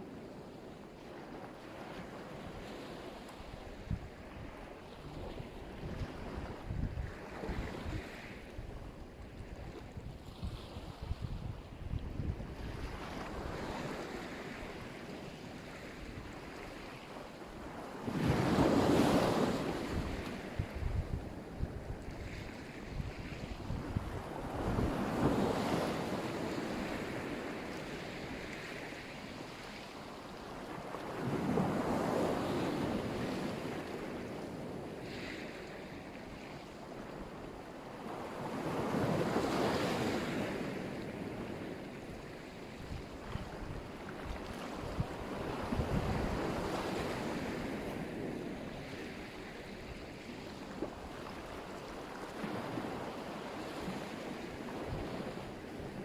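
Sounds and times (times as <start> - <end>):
waves breaking on shore: 0.0 - 56.0
wind buffeting microphone: 3.5 - 14.8, 18.1 - 28.5, 42.8 - 49.3.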